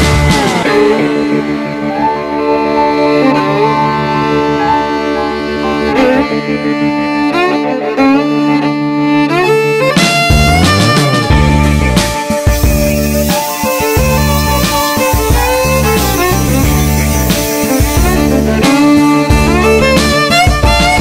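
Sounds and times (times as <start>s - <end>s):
steady low drone: 0.0s - 9.0s, 10.3s - 21.0s
bowed string: 0.0s - 21.0s
sustained melody of held notes: 0.0s - 21.0s.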